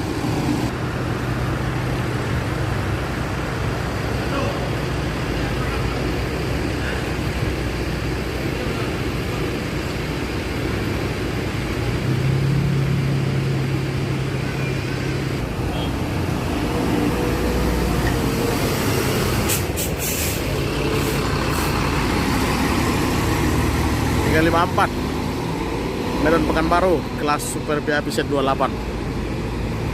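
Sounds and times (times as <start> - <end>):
bus diesel engine running: 0.0 - 29.9
air brake hisses: 19.5 - 21.8.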